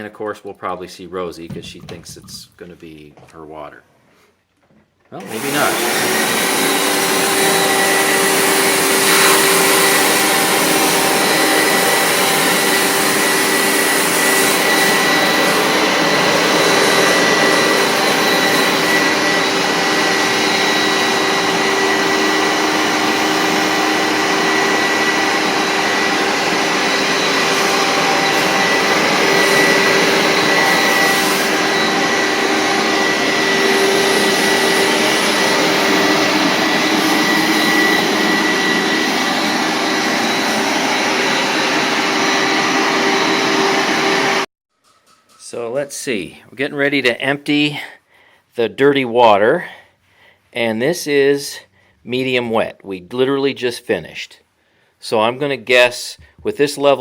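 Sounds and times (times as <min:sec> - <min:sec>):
carpet cleaner motor whining: 0:05.2 - 0:44.4.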